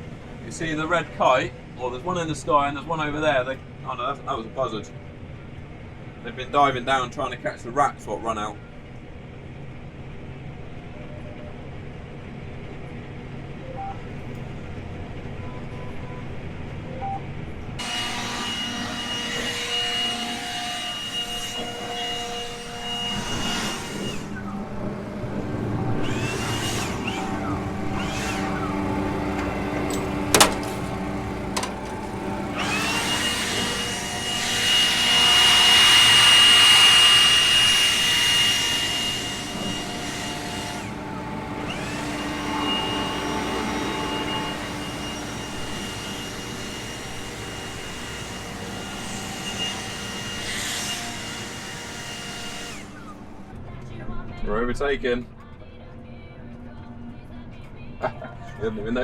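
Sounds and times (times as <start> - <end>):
combine harvester running: 24.2 - 53.8.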